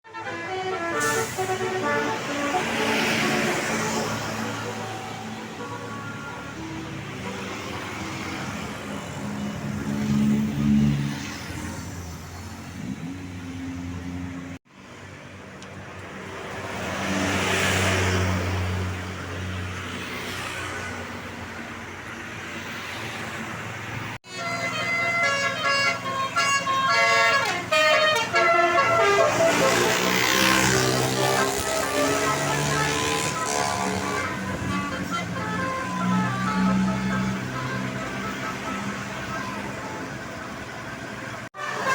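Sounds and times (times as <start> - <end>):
multi-tone bus horn: 0.0 - 10.9, 24.2 - 40.7, 41.3 - 41.9
bus engines running: 0.1 - 41.9
bus driving past: 0.3 - 15.4, 16.1 - 41.9.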